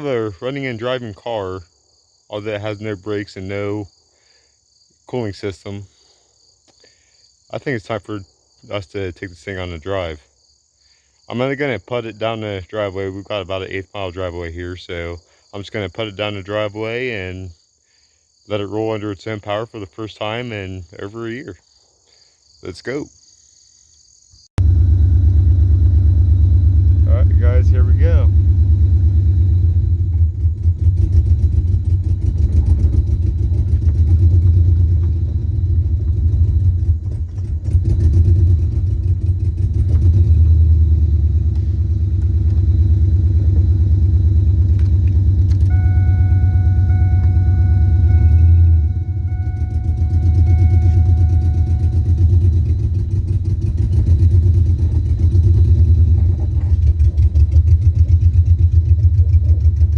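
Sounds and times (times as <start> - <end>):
car engine at low revs: 24.6 - 59.9
faint steady tone: 41.1 - 57.1.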